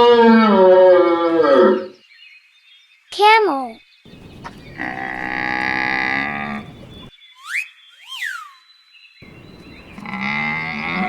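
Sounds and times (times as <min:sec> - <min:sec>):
camel calling: 0:04.1 - 0:07.1, 0:09.2 - 0:11.0
high whistling glides: 0:04.1 - 0:11.0.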